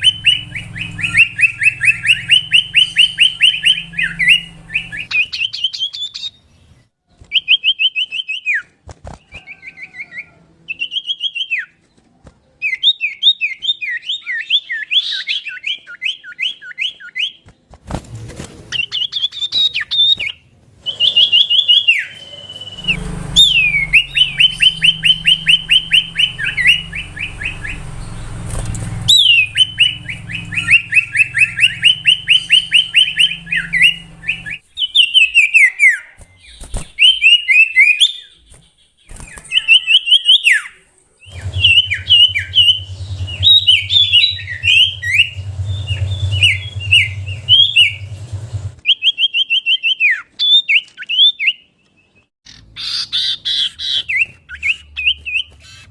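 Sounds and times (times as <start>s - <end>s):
low hum: 0.0s - 5.1s, 20.8s - 34.6s, 41.2s - 48.8s
bird singing whistled notes: 0.0s - 6.5s, 18.8s - 52.3s.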